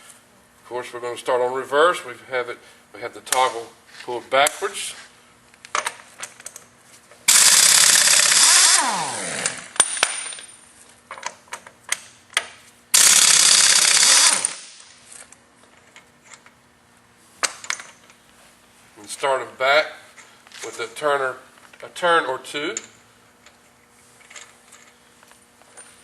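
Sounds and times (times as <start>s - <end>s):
air motor winding down whine: 7.3s - 9.8s
air impact wrench bursts: 7.3s - 10.4s, 12.9s - 14.9s.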